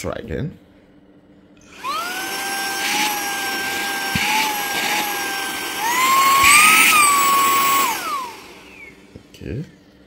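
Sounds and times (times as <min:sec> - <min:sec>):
handheld vacuum cleaner motor whine: 0:01.6 - 0:09.2.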